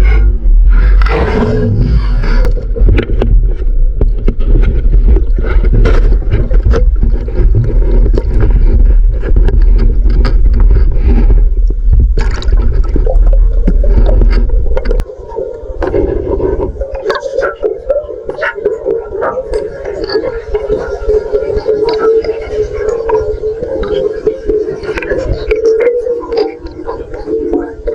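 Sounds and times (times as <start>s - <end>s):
muffled underwater rumble: 0.0s - 27.9s.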